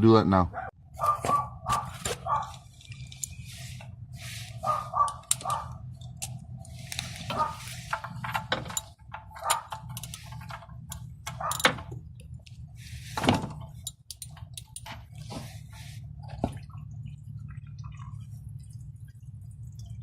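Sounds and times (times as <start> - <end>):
metal tools clinking and scraping: 1.1 - 12.0, 13.1 - 15.8.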